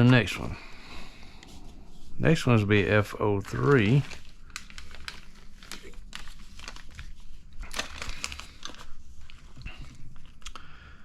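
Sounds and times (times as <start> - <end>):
plastic bags crinkling: 0.0 - 0.7, 2.3 - 10.8.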